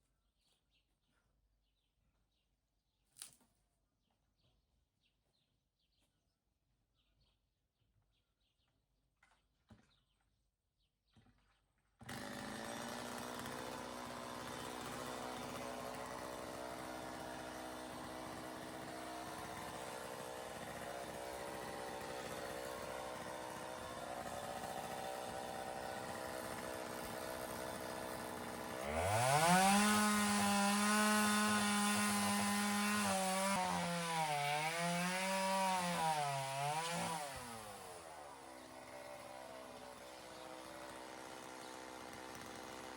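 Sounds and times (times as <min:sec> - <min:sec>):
chainsaw cutting wood: 0:12.0 - 0:42.9.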